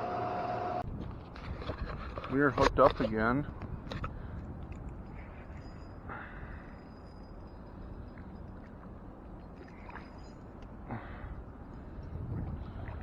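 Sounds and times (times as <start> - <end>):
river water: 2.8 - 13.0
wind on microphone: 11.3 - 13.0.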